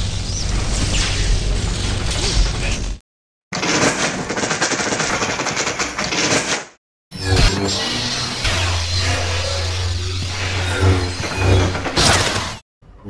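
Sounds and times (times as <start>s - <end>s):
low hum: 7.2s - 12.6s
lightsaber blades crackling sizzle: 8.0s - 12.4s.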